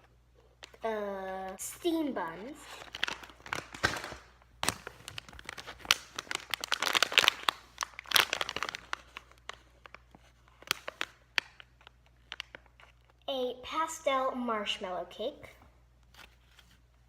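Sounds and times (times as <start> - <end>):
squishy toys crinkling and rustling: 0.0 - 0.9, 1.5 - 13.3.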